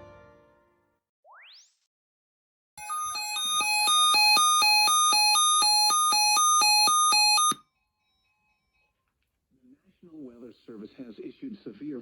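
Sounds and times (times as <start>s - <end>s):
electronic keyboard jingle: 2.8s - 7.6s.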